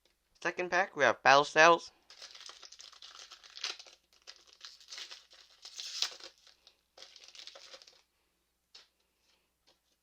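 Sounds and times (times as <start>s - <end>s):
foil wrapper crinkling and tearing: 2.0s - 8.1s.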